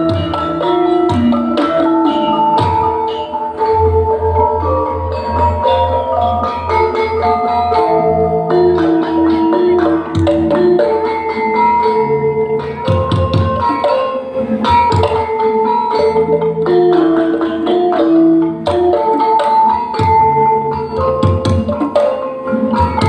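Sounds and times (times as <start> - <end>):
mallet instrument melody: 0.0 - 23.0.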